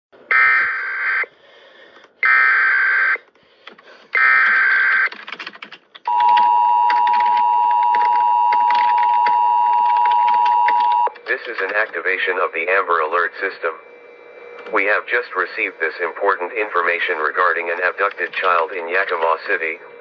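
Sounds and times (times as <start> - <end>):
scattered clicks: 3.3 - 12.1, 14.6 - 14.8, 17.7 - 19.4
two-tone attention signal: 6.1 - 11.3.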